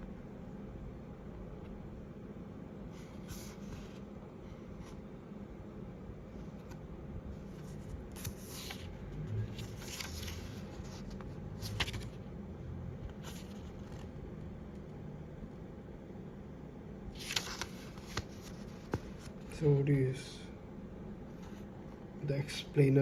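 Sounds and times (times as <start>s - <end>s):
low steady hum: 0.0s - 23.0s
paper pages rustling: 2.9s - 4.0s, 7.4s - 12.2s, 13.0s - 14.1s, 17.2s - 19.5s.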